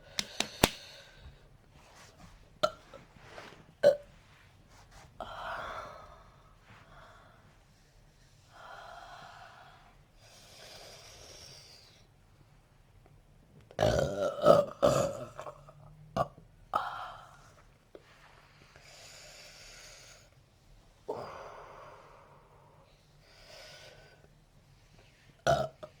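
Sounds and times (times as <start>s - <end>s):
person breathing: 0.0s - 1.5s, 5.2s - 7.7s
loud drawn-out burp: 13.8s - 15.3s.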